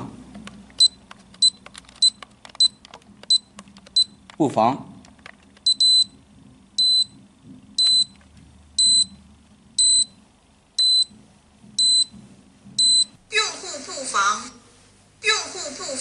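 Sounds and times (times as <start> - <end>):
alarm keypad beeping: 5.7 - 6.2, 6.8 - 7.2, 7.8 - 8.2, 8.8 - 9.2, 9.8 - 10.2, 10.8 - 11.1, 11.8 - 12.1, 12.8 - 13.2.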